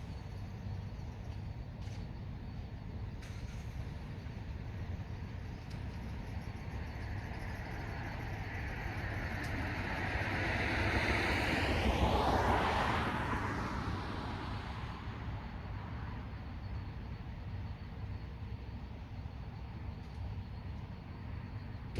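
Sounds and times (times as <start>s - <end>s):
steady low rumble: 0.0s - 19.9s
car passing by: 7.4s - 15.6s.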